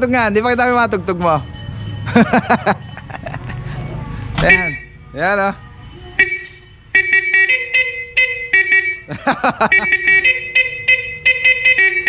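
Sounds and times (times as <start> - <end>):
electric horns honking a tune: 6.2 - 9.1, 9.7 - 12.0.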